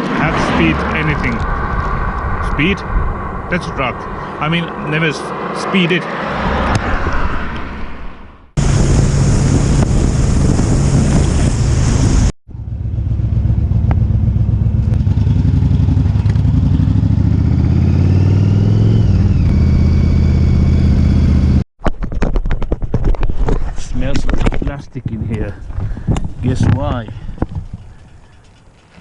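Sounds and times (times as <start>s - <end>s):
wind rushing over microphone: 0.0s - 12.3s, 22.0s - 28.3s
motorcycle engine running: 8.6s - 21.6s.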